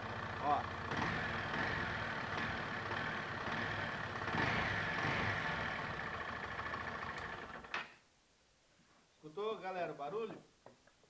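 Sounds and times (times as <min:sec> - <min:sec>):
motorcycle engine running: 0:00.0 - 0:07.6.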